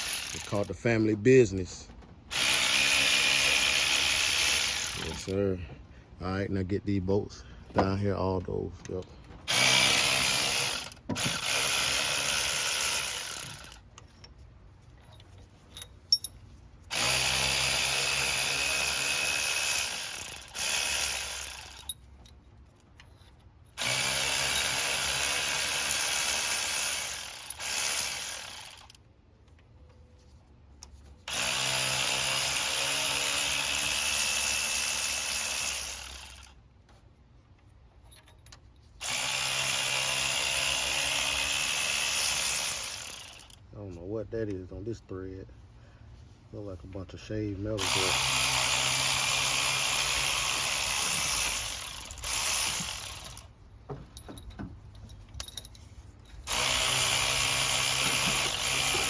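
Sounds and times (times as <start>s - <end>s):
cordless power tool whining: 0.0s - 0.8s, 2.3s - 5.4s, 8.8s - 13.9s, 16.9s - 22.0s, 23.8s - 29.0s, 31.3s - 36.6s, 39.0s - 43.6s, 47.8s - 53.5s, 56.4s - 59.0s.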